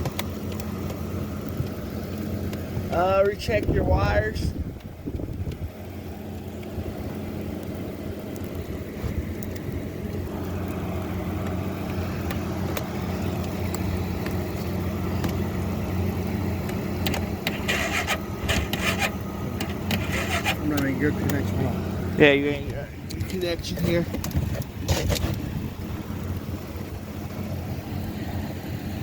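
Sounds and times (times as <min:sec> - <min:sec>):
truck engine idling: 0:00.0 - 0:29.0
scraping crunching noises: 0:16.6 - 0:21.8, 0:23.1 - 0:25.5.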